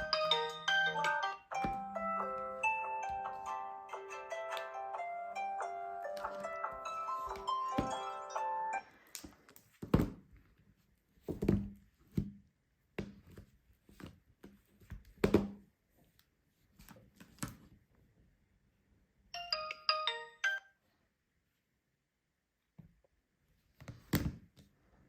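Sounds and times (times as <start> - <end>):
mobile phone ringtone: 0.0 - 8.9, 19.4 - 20.8.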